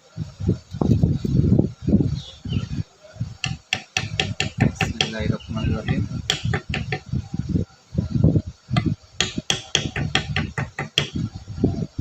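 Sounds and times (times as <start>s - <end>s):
hammer knocking on metal: 3.4s - 7.1s, 8.8s - 11.2s.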